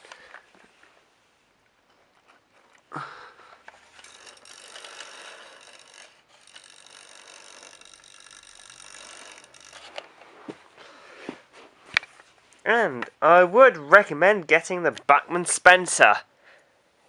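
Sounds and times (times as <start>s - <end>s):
model train motor whirring: 3.6s - 10.1s
model train clicks: 4.0s - 10.1s.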